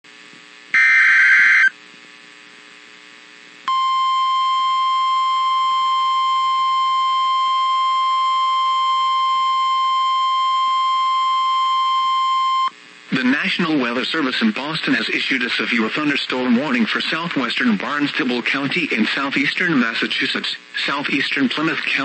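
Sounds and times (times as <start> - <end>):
digital data screech: 0.8 - 1.7
steady alarm tone: 0.8 - 1.7.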